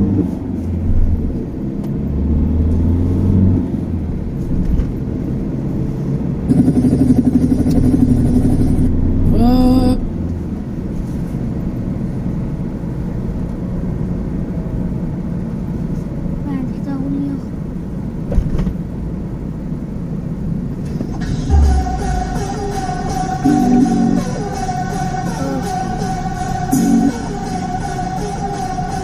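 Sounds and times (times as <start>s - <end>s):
vehicle passing by: 0.0s - 12.3s
low engine rumble: 0.0s - 29.0s
steady traffic noise: 0.0s - 29.0s
short rising tone: 21.0s - 29.0s.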